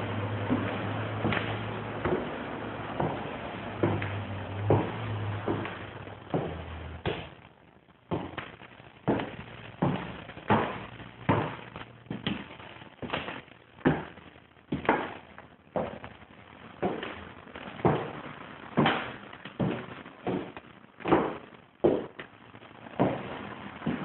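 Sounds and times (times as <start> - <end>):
footsteps on hardwood floor: 0.0 - 7.4, 8.1 - 16.2, 16.8 - 24.0.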